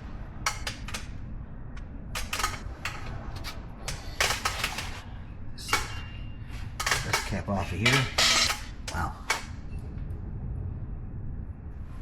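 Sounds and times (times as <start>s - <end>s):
hand tools clinking on metal: 6.8s - 8.8s.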